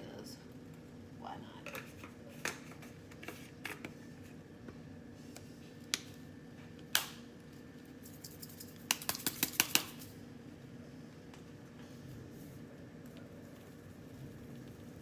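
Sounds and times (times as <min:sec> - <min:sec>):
spice containers clicking: 0:08.2 - 0:10.1.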